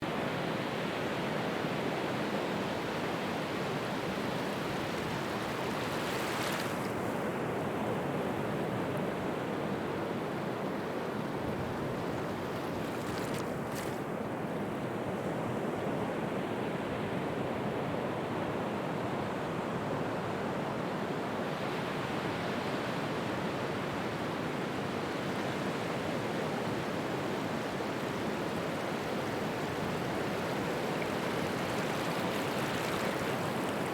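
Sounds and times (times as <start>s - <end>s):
waves breaking: 3.0s - 15.5s, 26.7s - 33.9s.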